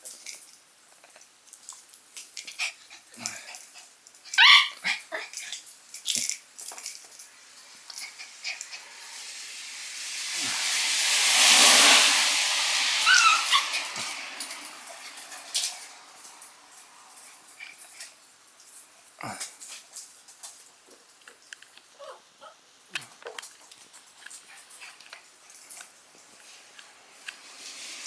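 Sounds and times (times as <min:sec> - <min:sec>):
puppy whining: 0:04.3 - 0:05.5, 0:13.0 - 0:13.9, 0:22.0 - 0:22.6
hiss: 0:07.2 - 0:18.2, 0:24.4 - 0:28.0.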